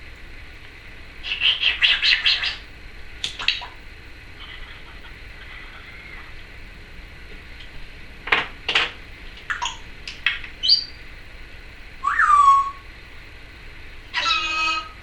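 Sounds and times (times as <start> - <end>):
parrot clicks and chirps: 3.2 - 3.8, 9.5 - 11.0
parrot whistle dropping in pitch: 12.0 - 12.8, 14.1 - 15.0.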